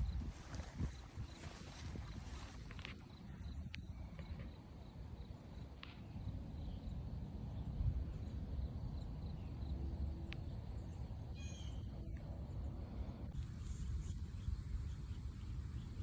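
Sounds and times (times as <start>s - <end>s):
steady low rumble: 6.2s - 16.0s.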